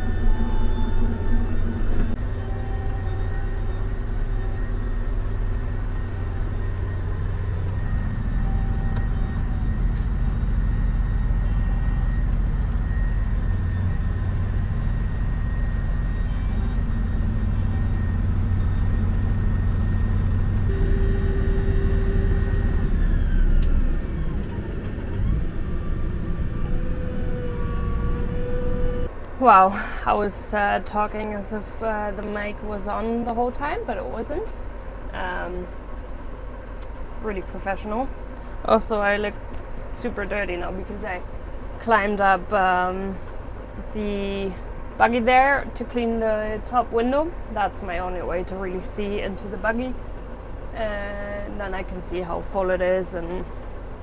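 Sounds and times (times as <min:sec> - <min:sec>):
tractor engine rumbling: 0:00.0 - 0:29.1
high whine: 0:00.0 - 0:29.7.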